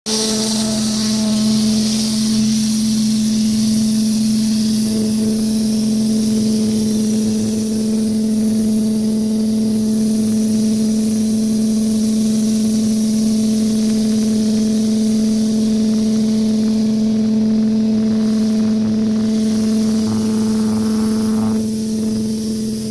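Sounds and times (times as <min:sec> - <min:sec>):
water spray hissing on concrete: 0:00.1 - 0:22.9
pressure washer motor hum: 0:13.4 - 0:22.9.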